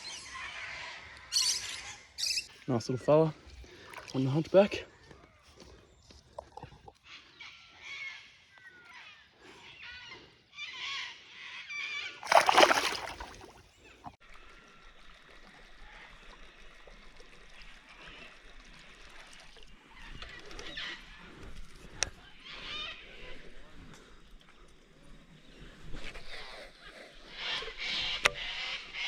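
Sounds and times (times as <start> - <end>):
loud splash in river: 12.2 - 13.6.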